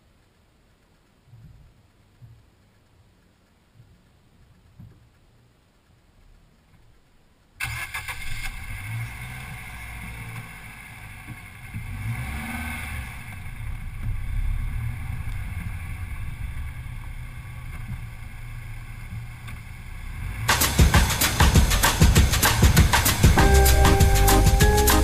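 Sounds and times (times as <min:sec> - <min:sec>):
car engine and road rumble: 0:00.0 - 0:25.0
tyre hiss: 0:20.4 - 0:25.0.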